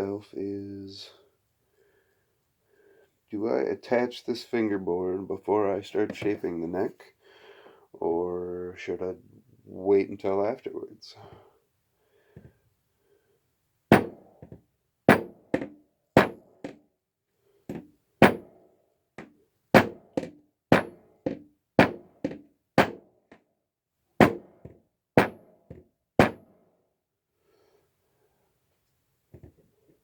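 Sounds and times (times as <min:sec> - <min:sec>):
sharp hammer-like knocks: 0:13.9 - 0:16.8, 0:17.7 - 0:18.5, 0:19.2 - 0:23.1, 0:24.2 - 0:26.5.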